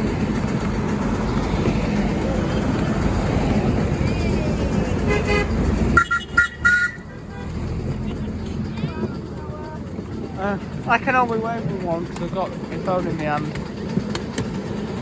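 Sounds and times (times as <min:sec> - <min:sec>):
miniature railway coaches rumbling: 0:00.0 - 0:15.0
two-tone horn toots: 0:04.9 - 0:08.2
train horn: 0:05.0 - 0:07.6.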